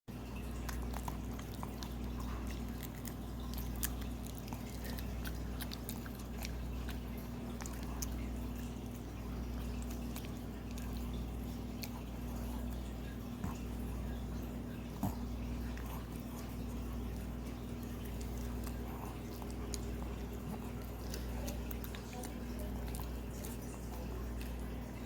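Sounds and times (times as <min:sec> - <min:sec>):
puppy chewing a carrot: 0:00.1 - 0:25.0.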